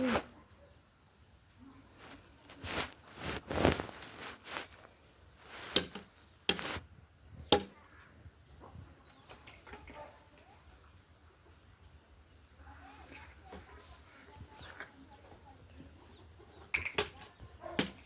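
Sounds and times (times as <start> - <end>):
hands rustling through hair: 2.0 - 6.8.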